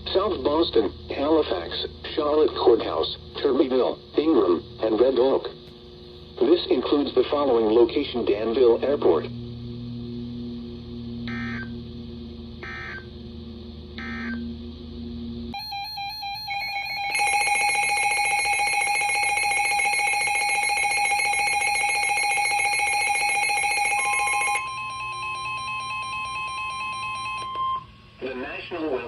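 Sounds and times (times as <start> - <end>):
low radio hum: 0.0 - 15.6, 27.6 - 29.0
harsh steady alert tone: 11.2 - 12.0, 12.6 - 13.3, 13.9 - 29.0.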